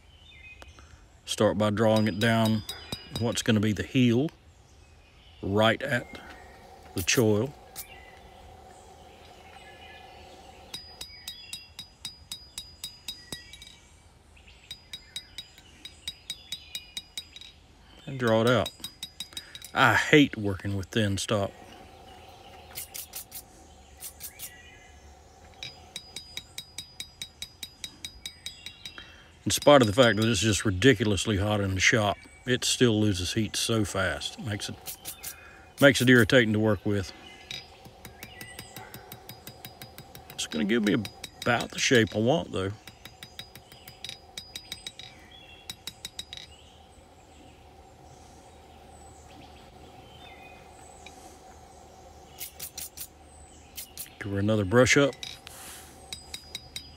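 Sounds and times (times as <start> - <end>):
faint chirps: 0.0 - 4.5, 5.4 - 56.9
hammer striking steel on anvil: 2.0 - 3.5, 10.7 - 13.8, 18.3 - 19.8, 25.6 - 30.4, 37.5 - 46.5
steady hum: 5.4 - 13.6, 17.0 - 56.9
hammer ringing on anvil: 25.7 - 28.8, 43.0 - 45.1.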